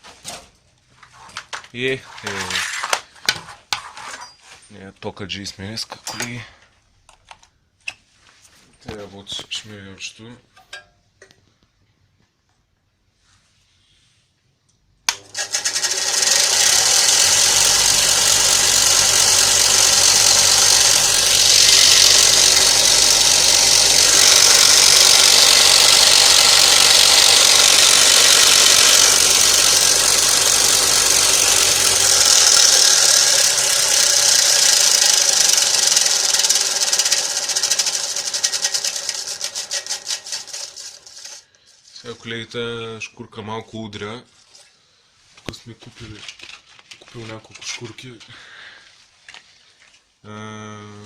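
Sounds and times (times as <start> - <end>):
bench grinder running: 15.1 - 41.4.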